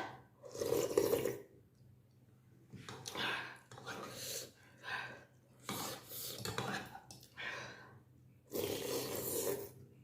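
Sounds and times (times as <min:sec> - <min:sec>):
loud slurping of noodle soup: 0:00.4 - 0:01.5, 0:08.5 - 0:09.8.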